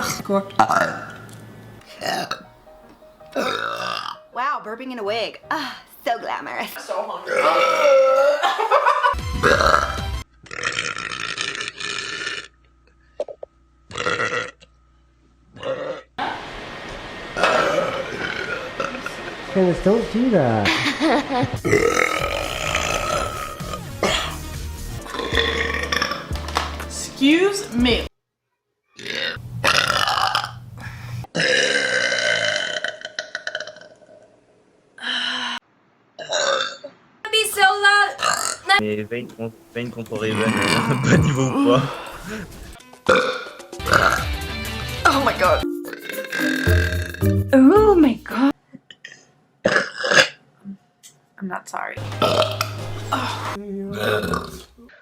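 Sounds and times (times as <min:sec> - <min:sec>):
person burping: 0:01.8 - 0:02.5, 0:03.3 - 0:04.2, 0:07.2 - 0:08.4, 0:09.4 - 0:12.5, 0:13.2 - 0:14.7, 0:15.6 - 0:16.1, 0:17.4 - 0:19.1, 0:21.6 - 0:24.4, 0:25.0 - 0:26.3, 0:29.0 - 0:30.6, 0:31.3 - 0:34.4, 0:36.2 - 0:37.0, 0:38.2 - 0:38.8, 0:40.1 - 0:44.4, 0:45.9 - 0:47.4, 0:48.9 - 0:50.4, 0:52.2 - 0:54.9
steady hiss: 0:38.8 - 0:40.3.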